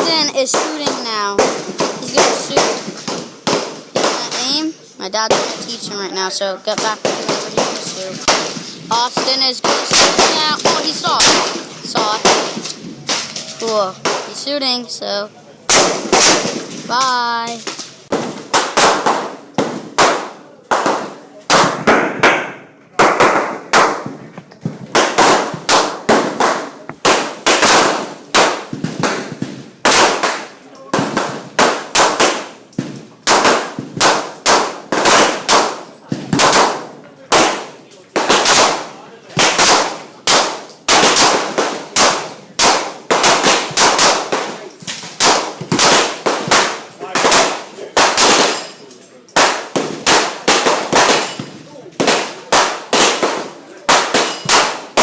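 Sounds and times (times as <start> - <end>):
gunshots with ringing echo: 6.7 - 13.4, 15.7 - 16.9, 24.9 - 44.6, 45.2 - 48.8, 49.4 - 55.0.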